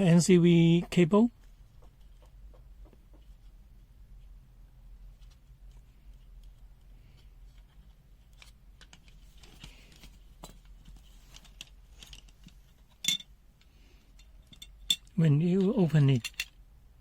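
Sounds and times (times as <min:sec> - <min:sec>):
low electrical hum: 0:00.0 - 0:17.0
small parts clicking and rustling: 0:05.1 - 0:16.6.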